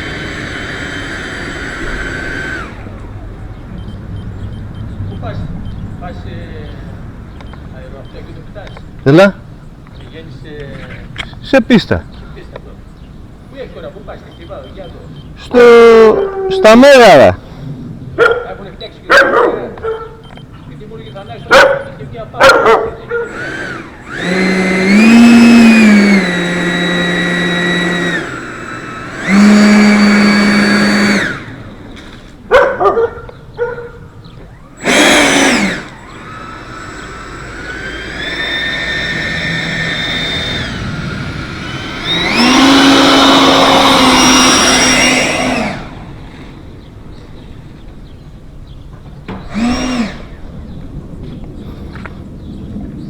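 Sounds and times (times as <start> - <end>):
electric motor whining: 0.0 - 5.0, 22.9 - 32.5, 33.2 - 47.9, 49.3 - 50.7.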